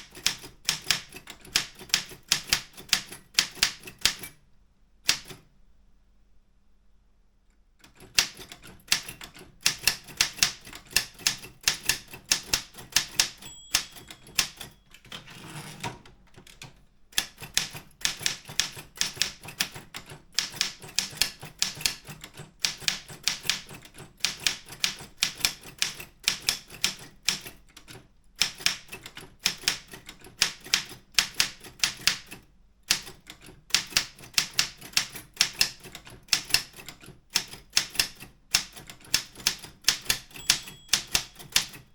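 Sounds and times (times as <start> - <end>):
typewriter key strikes: 0.0 - 4.4, 5.1 - 5.4, 7.8 - 41.9
typewriter bell ring: 12.6 - 15.8, 40.0 - 41.9.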